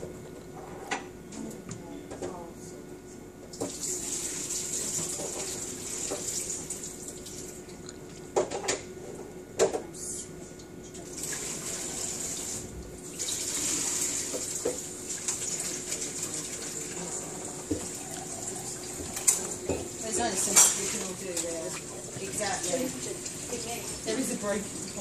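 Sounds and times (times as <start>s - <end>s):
tap water running into sink: 3.6s - 7.4s, 11.2s - 25.0s.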